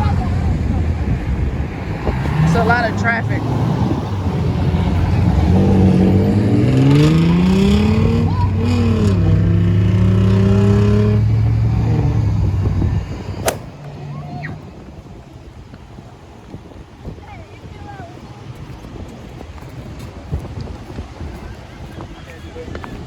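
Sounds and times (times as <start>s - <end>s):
car engine accelerating: 1.0s - 14.0s.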